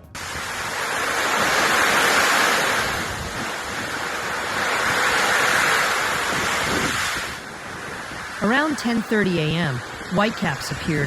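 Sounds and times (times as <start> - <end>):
rough sea surf: 0.0 - 11.0.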